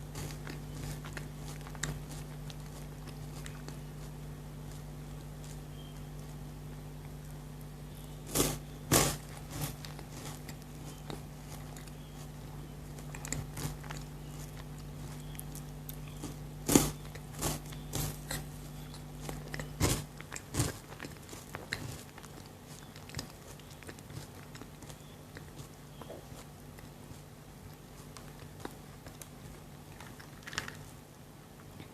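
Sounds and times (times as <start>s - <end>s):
biting crunchy chocolate: 0.0s - 31.0s
chocolate snapping: 12.9s - 26.2s.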